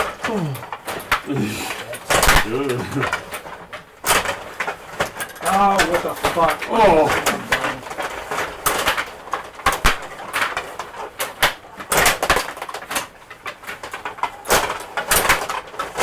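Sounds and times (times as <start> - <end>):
table hockey puck and players clacking: 0.0 - 16.0.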